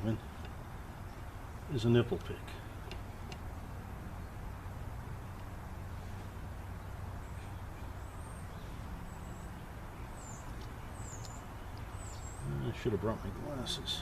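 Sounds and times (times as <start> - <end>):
low outdoor rumble: 0.0 - 14.0
small bird chirping: 6.7 - 13.4.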